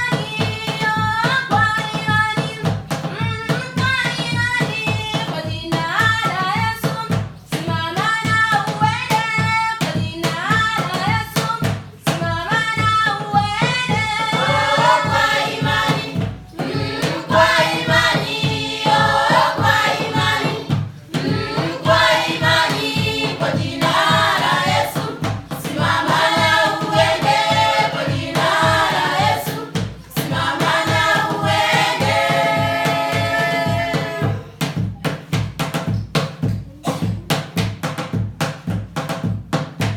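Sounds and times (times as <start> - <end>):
choir singing over a low beat: 12.1 - 34.8.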